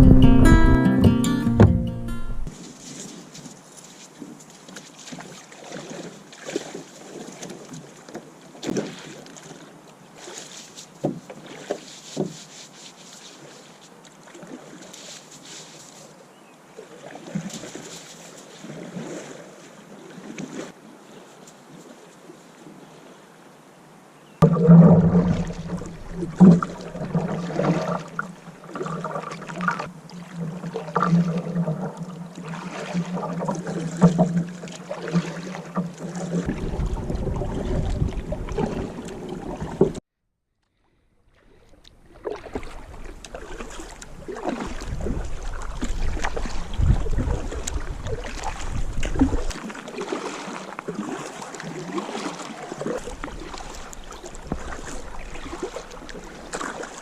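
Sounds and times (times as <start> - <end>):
paddle strokes in water: 1.6 - 23.4, 24.2 - 40.0, 40.7 - 57.0
water dripping from paddle: 24.4 - 40.0, 41.6 - 57.0.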